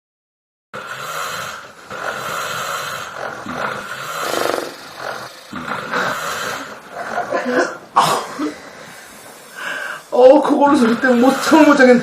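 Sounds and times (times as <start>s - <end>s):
person snoring: 0.8s - 7.8s.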